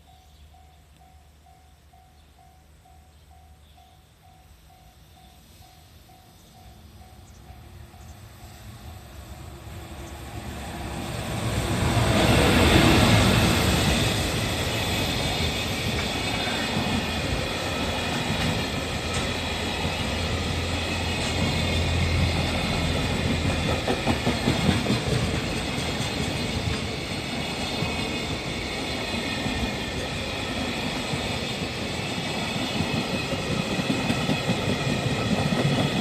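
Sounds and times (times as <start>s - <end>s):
locomotive rushing past: 7.0s - 36.0s
freight wagons clickety-clack: 23.2s - 27.0s.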